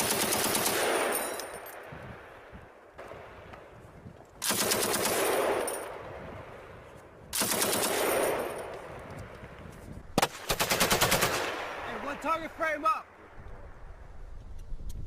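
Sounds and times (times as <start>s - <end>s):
machine gun bursts: 0.0s - 1.5s, 4.4s - 5.9s, 7.4s - 8.6s, 10.2s - 11.5s.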